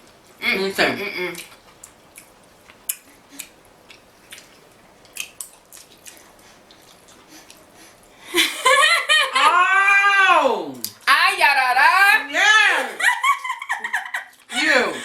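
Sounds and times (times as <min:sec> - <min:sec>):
shellfish clicks and wet chewing: 0:01.4 - 0:08.1.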